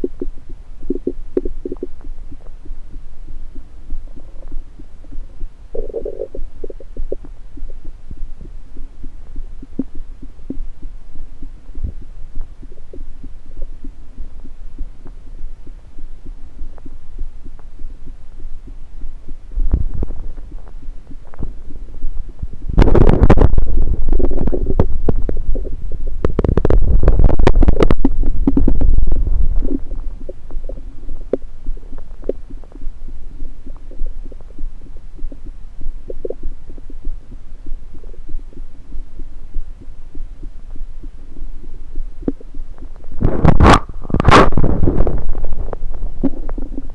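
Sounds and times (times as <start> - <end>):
stomach gurgles: 0.0 - 46.9
loud rumbling gurgle: 22.7 - 30.8.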